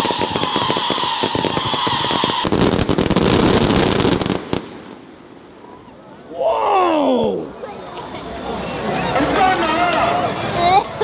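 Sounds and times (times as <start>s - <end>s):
fireworks cracking: 0.0s - 5.6s.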